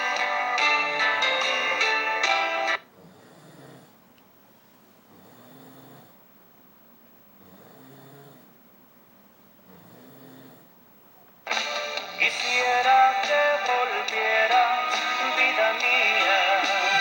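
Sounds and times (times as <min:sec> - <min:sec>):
music: 0:00.0 - 0:02.8, 0:11.4 - 0:17.0
person snoring: 0:03.0 - 0:04.0, 0:05.1 - 0:06.2, 0:07.4 - 0:08.5, 0:09.7 - 0:10.7.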